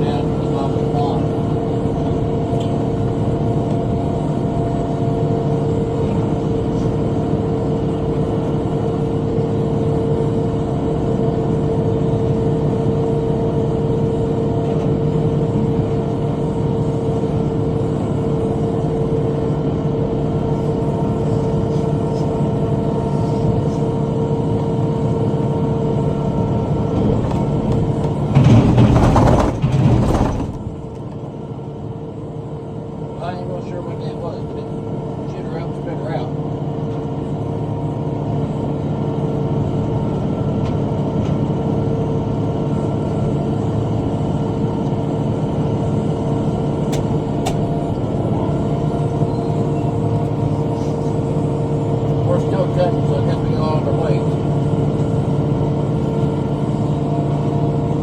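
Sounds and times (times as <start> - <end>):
tractor engine running under load: 13.0 - 31.6
rough engine burst: 28.3 - 30.9.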